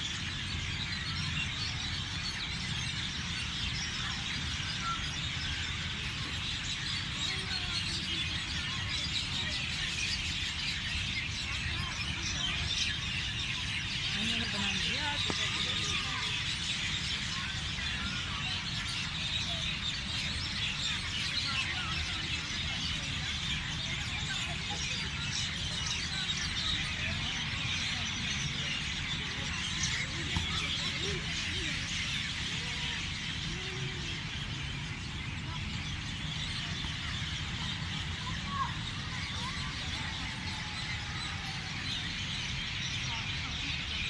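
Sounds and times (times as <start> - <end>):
small birds chirping: 0.0 - 44.0.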